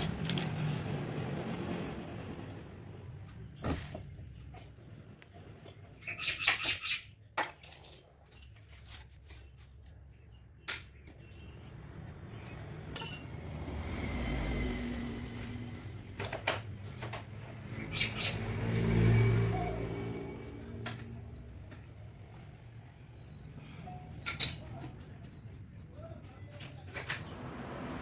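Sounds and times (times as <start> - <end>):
metallic clicks and clinks: 13.0 - 13.3
motorcycle engine revving: 13.3 - 16.2, 17.5 - 21.5.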